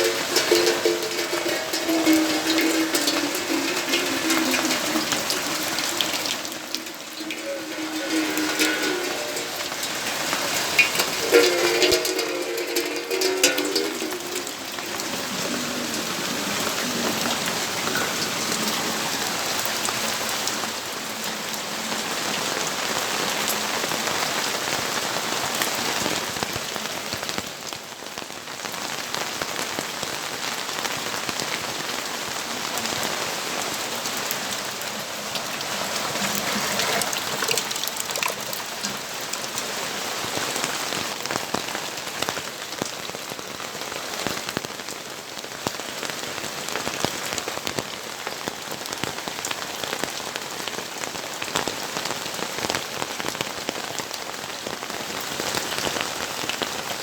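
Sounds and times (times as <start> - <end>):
rain pattering: 0.0 - 57.0.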